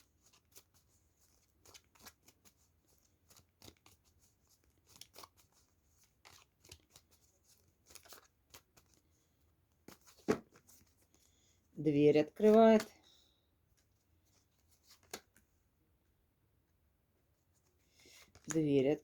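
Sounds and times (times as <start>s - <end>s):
cards being shuffled: 0.1s - 9.1s, 9.8s - 11.3s, 12.3s - 12.9s, 13.7s - 15.4s, 17.6s - 18.7s.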